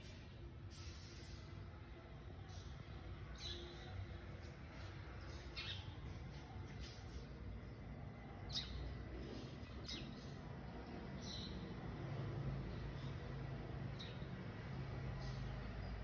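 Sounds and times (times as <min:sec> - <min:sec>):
small birds chirping: 0:02.4 - 0:11.8, 0:12.7 - 0:16.0.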